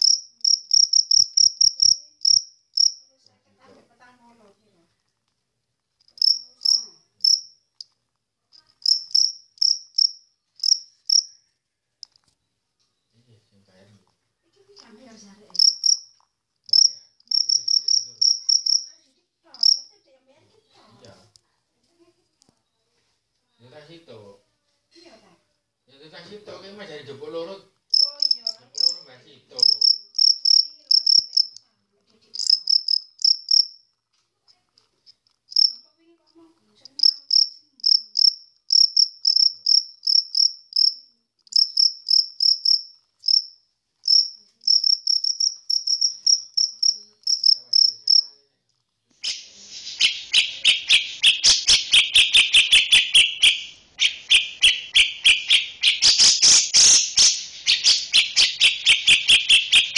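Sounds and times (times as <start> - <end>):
harsh insect rasp: 0.0 - 3.0, 6.1 - 7.4, 8.8 - 11.3, 15.6 - 16.0, 16.7 - 18.9, 19.5 - 19.8, 27.9 - 29.0, 29.6 - 31.5, 32.4 - 33.7, 35.5 - 35.8, 36.9 - 43.5, 44.1 - 48.3, 49.3 - 53.6, 54.2 - 59.9
cricket chirping: 0.0 - 3.2, 6.0 - 7.9, 8.5 - 11.4, 14.8 - 18.9, 19.5 - 20.0, 27.9 - 31.6, 32.3 - 33.9, 35.5 - 35.8, 36.8 - 48.4, 49.2 - 59.9.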